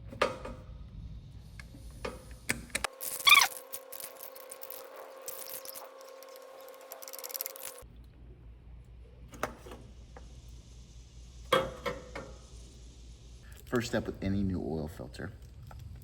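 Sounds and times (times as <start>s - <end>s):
tools and parts clicking: 2.5s - 7.8s.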